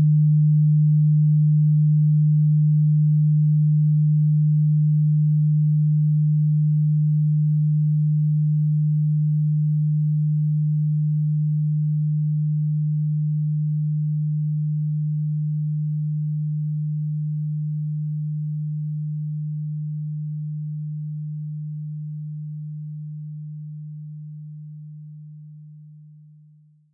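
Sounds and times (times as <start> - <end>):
low electronic sine tone: 0.0 - 26.9.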